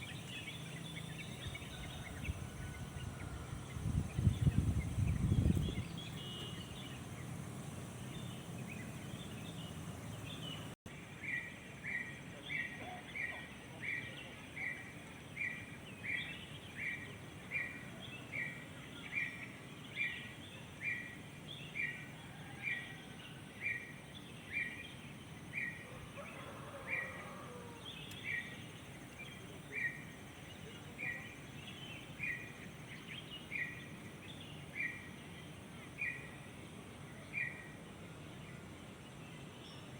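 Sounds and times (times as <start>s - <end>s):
low background rumble: 0.0s - 10.8s
birds chirping: 0.0s - 39.9s.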